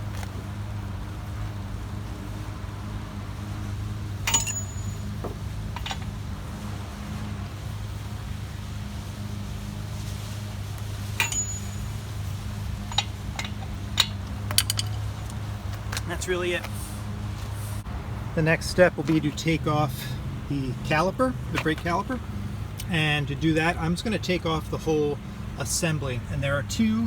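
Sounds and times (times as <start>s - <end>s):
steady low hum: 0.0s - 27.0s
metallic clinks of hand tools: 4.2s - 5.2s, 5.8s - 6.1s, 11.2s - 12.0s, 12.8s - 15.4s.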